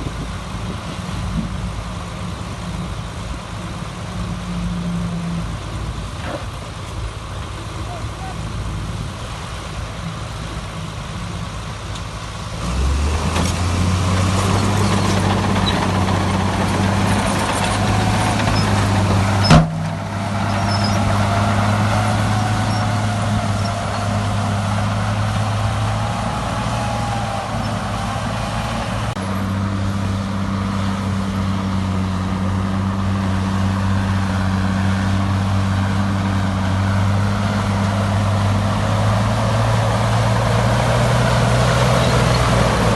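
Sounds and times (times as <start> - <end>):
heavy diesel engine running: 0.0 - 42.9.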